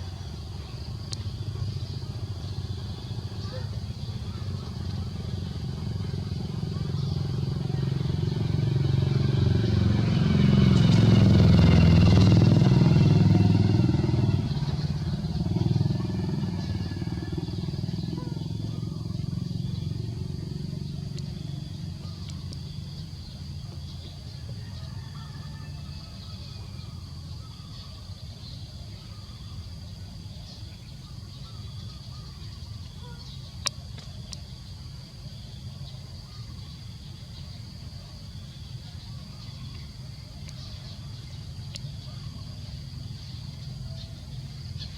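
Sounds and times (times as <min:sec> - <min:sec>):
engine running: 0:00.0 - 0:28.4.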